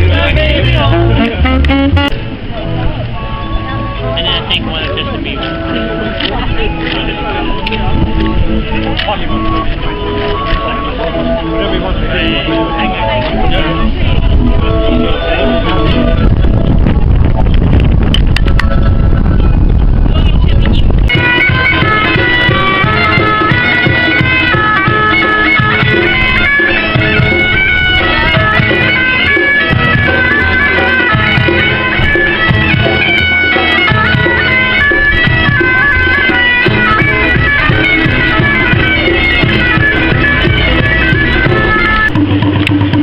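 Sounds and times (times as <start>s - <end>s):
bagpipe melody over drones: 0.0s - 2.5s, 21.1s - 42.3s.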